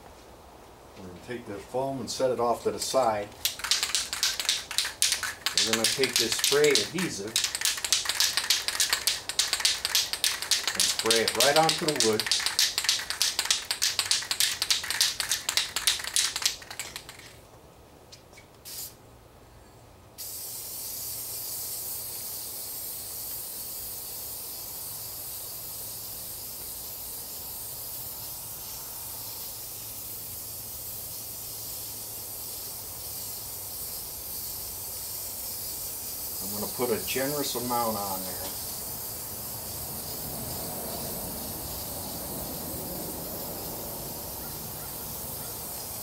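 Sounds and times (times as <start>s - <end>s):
aerosol spray hissing: 2.9s - 17.3s, 18.6s - 19.0s, 20.2s - 46.0s
aerosol can rattling: 3.4s - 17.4s, 29.9s - 42.6s.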